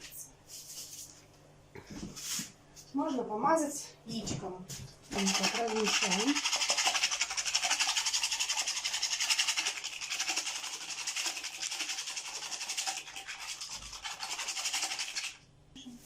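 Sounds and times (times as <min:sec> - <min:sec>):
brush scratching pastry: 0:05.1 - 0:15.4.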